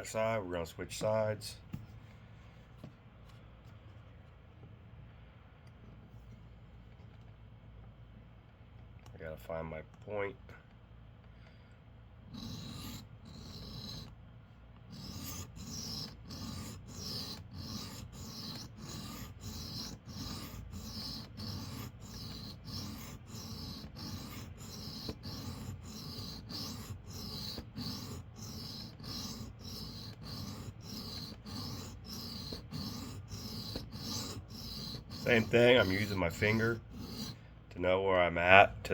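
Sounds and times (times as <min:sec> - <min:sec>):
knife scraping on sharpening stone: 0:14.9 - 0:37.4.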